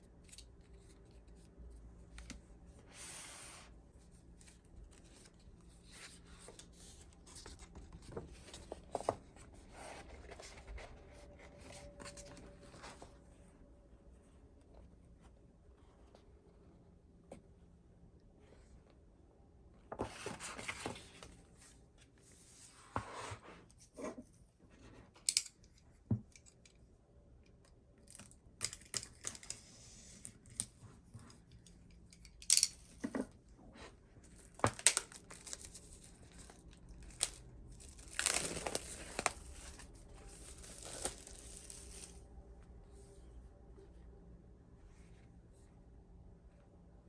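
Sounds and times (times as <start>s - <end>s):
packaging tearing and crinkling: 34.5s - 42.2s.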